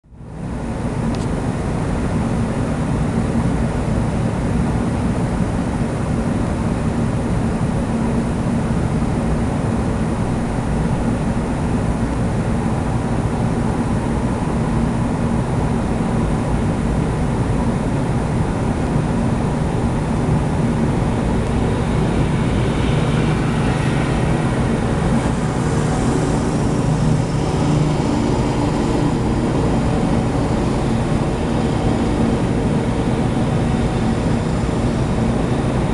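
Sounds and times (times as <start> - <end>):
lawnmower engine running: 19.7 - 35.4.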